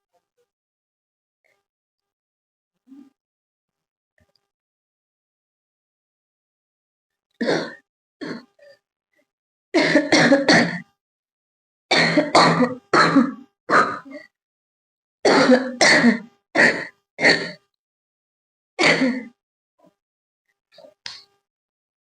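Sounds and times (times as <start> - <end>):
girl coughing: 7.4 - 8.5, 9.8 - 10.8, 11.9 - 14.3, 15.3 - 17.6, 18.8 - 19.3.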